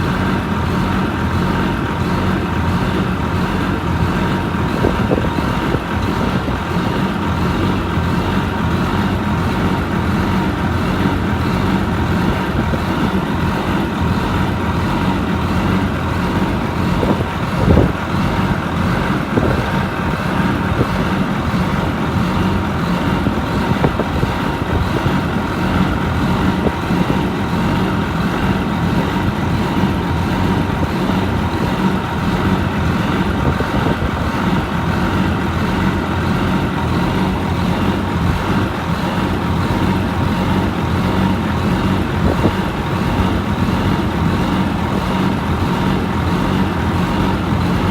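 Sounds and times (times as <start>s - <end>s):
diesel engine running: 0.0s - 47.9s
hum and whine: 0.0s - 47.9s.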